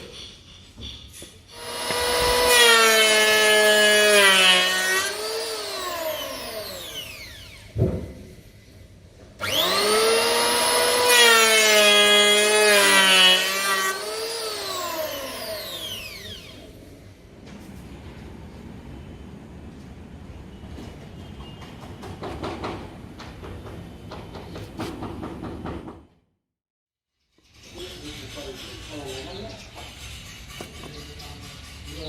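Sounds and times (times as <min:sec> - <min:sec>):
electric planer whining: 0:01.6 - 0:07.6, 0:09.4 - 0:16.6.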